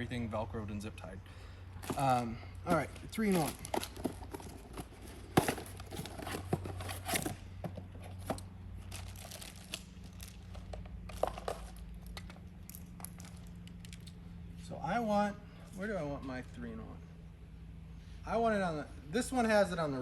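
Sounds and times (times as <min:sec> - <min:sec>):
packaging crinkling and tearing: 0:08.8 - 0:10.6.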